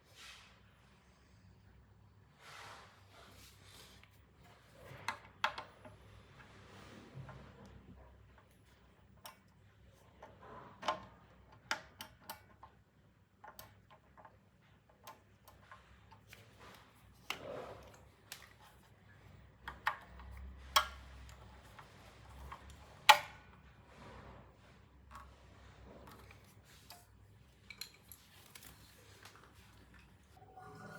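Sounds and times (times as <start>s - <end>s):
tools and parts clicking and tapping: 10.2s - 23.6s, 26.1s - 30.2s.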